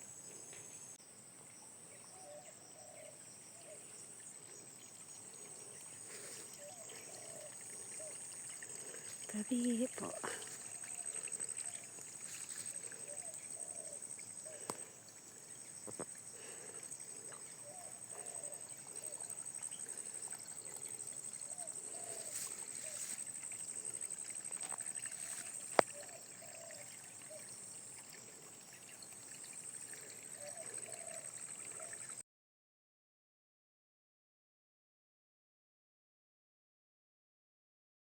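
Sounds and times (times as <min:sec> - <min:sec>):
water trickling and pouring: 0:03.4 - 0:32.2.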